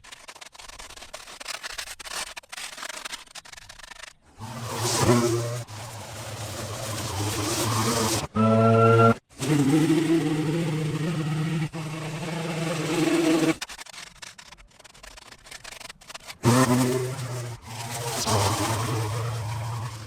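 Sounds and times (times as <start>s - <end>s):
small gasoline engine running: 9.4s - 13.6s
faint clicks and handling noise: 13.6s - 16.4s.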